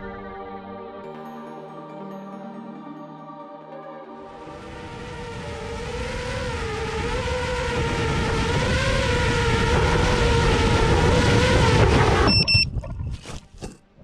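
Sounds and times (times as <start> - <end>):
quadcopter motors whining: 4.4 - 12.3
wind rumble: 4.4 - 13.4.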